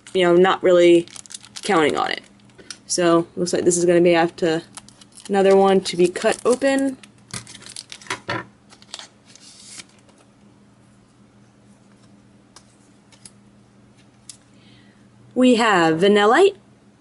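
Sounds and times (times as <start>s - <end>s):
wrapper rustling: 0.0s - 2.8s, 4.3s - 10.3s
scissors snipping wrapper: 1.1s - 2.6s, 4.7s - 8.1s.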